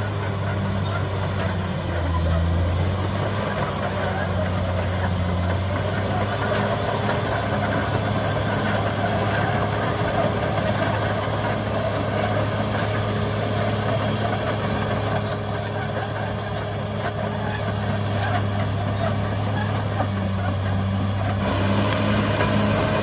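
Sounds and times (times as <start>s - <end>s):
bulldozer diesel engine drone: 0.0s - 23.0s
short high squeaks: 0.0s - 23.0s.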